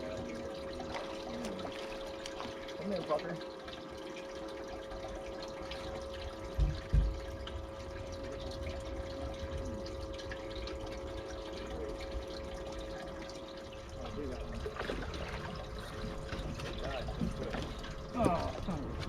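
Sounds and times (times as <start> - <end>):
steady pump hum: 0.0 - 19.0
water trickling: 0.0 - 19.0
dull low thumps: 6.5 - 7.8.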